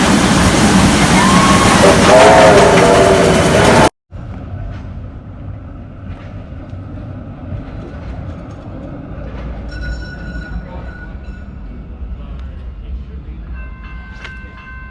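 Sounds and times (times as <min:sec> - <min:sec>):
train passing close: 0:00.0 - 0:14.9
train horn: 0:01.2 - 0:03.9.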